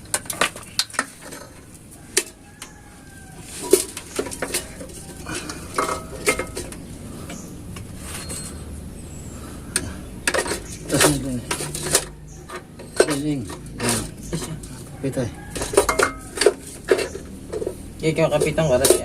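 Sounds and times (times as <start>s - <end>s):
metal tools clinking and clanking: 0.0s - 2.8s, 3.4s - 8.8s, 9.7s - 19.0s.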